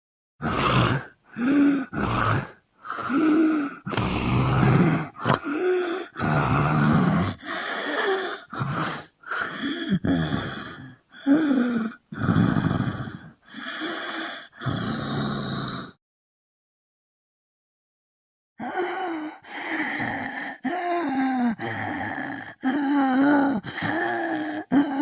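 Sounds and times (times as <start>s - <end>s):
man groaning and snarling: 0.4s - 7.4s.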